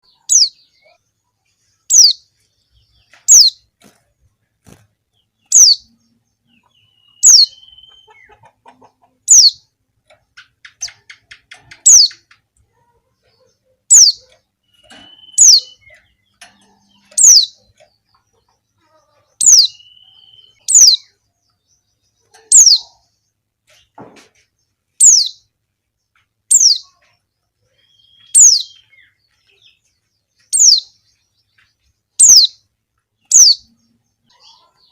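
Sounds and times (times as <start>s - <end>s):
faint lower bird chips: 10.4s - 34.9s.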